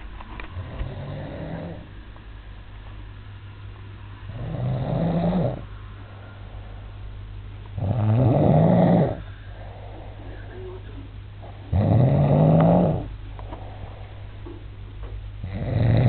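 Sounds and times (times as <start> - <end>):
man snoring: 0.6 - 1.9, 4.3 - 5.7, 7.8 - 10.0, 11.6 - 13.1, 15.4 - 16.0.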